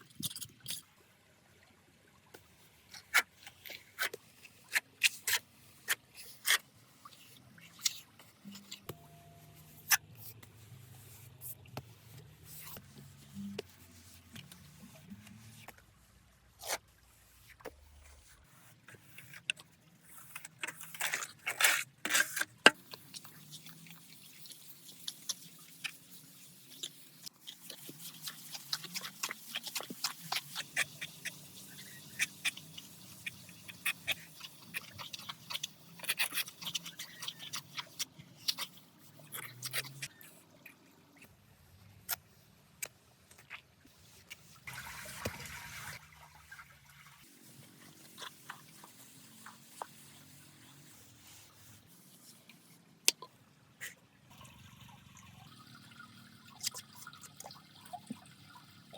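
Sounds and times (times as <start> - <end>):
soil and stones scraping: 17.6 - 40.3.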